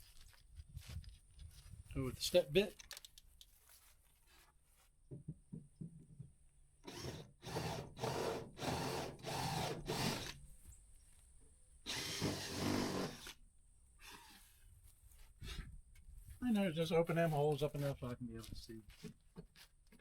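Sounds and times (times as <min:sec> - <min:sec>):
power drill drilling metal: 0:06.8 - 0:10.4, 0:11.9 - 0:13.4.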